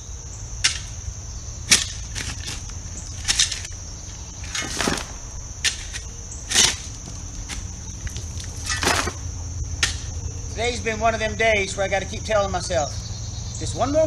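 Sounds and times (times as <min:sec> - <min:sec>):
crickets trilling: 0:00.0 - 0:14.0
hand tool scraping gravel: 0:01.7 - 0:09.2.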